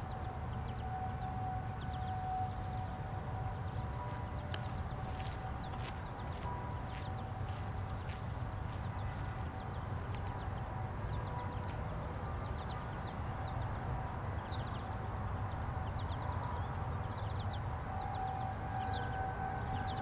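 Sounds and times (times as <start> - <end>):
warning siren alert tone: 0.7 - 5.8
small birds chirping: 4.4 - 19.1.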